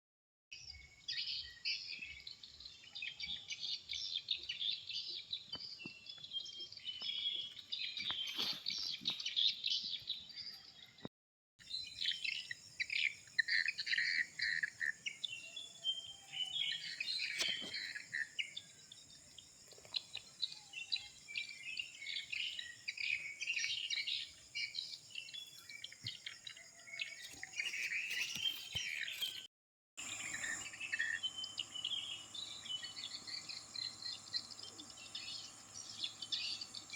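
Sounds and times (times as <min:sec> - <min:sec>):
birds chirping and singing: 0:00.6 - 0:36.9
insects: 0:11.6 - 0:36.9.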